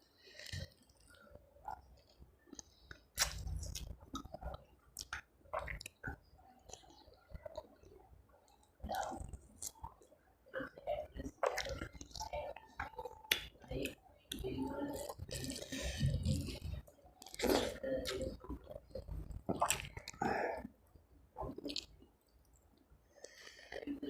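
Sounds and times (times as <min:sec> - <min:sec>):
person chewing food: 0:00.2 - 0:10.1, 0:14.3 - 0:20.7.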